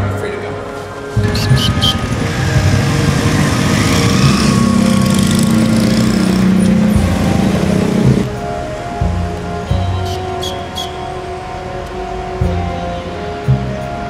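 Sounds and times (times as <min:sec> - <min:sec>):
motor engine humming: 0:01.2 - 0:08.6.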